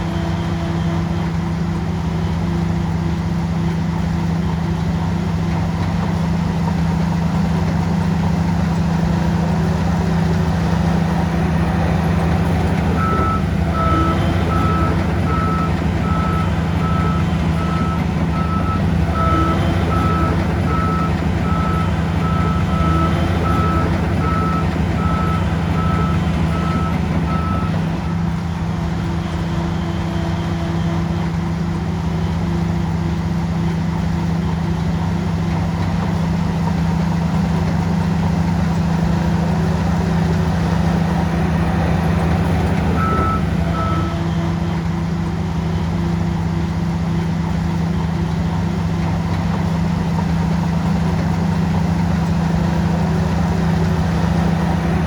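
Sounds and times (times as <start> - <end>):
bulldozer diesel engine running: 0.0 - 55.0
reversing alarm beeping: 11.0 - 28.4, 41.5 - 45.0.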